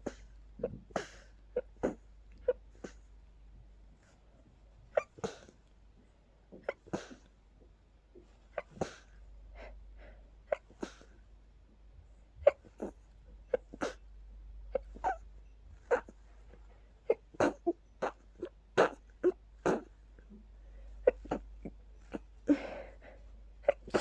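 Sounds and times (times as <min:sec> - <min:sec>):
person sneezing: 0:21.1 - 0:24.0.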